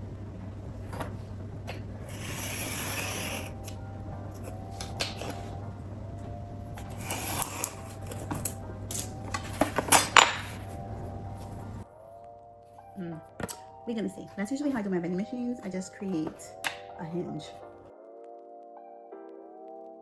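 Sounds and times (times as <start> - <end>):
scissors snipping paper: 1.7 - 5.5, 6.8 - 10.6
paper rustling: 6.7 - 11.8.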